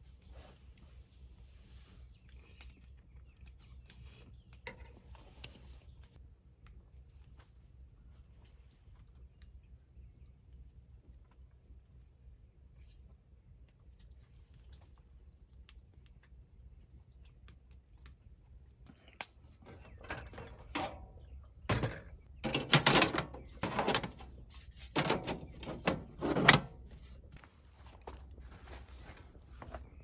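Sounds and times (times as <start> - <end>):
camping gear knocks and thuds: 21.7 - 24.0.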